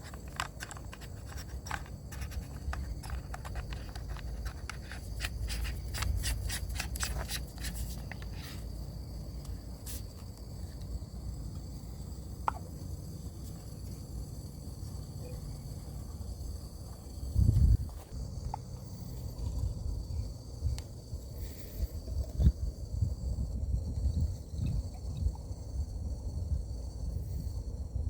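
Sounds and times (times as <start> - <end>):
coffee gear clicks and scrapes: 0.0 - 8.7
high insect trill: 0.0 - 28.0.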